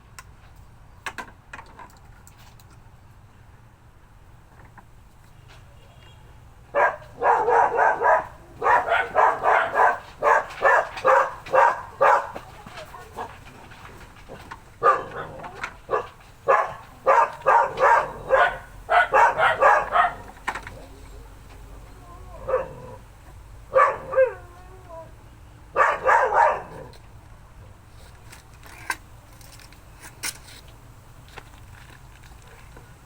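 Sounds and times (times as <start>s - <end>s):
dog barking: 6.7s - 13.4s, 14.3s - 20.9s, 22.0s - 23.0s, 23.7s - 25.0s, 25.7s - 26.9s.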